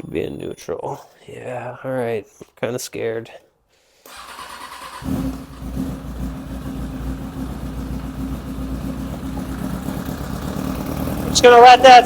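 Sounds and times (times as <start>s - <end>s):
motorcycle engine starting and idling: 4.1s - 12.0s.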